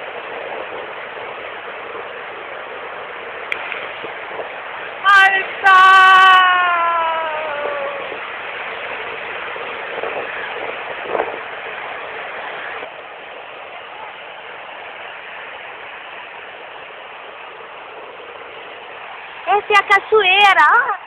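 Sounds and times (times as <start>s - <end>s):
waterfall rushing: 0.0s - 21.0s.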